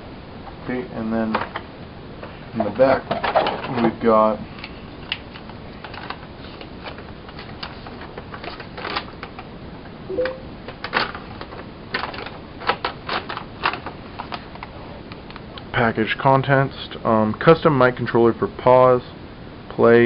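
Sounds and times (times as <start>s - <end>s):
packaging clicks and rustles: 5.1s - 9.5s, 10.9s - 14.7s.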